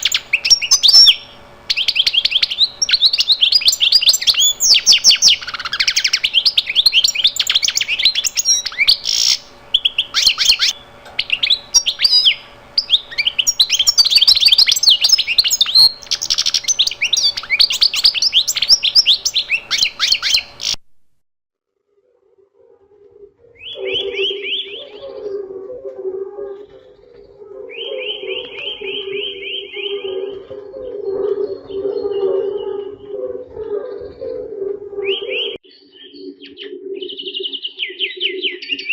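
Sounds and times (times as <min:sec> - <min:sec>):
birds chirping and twittering: 0:00.0 - 0:20.8, 0:23.6 - 0:38.9
bursts of high chirps: 0:00.0 - 0:20.8
lower wavering sound: 0:22.3 - 0:35.6.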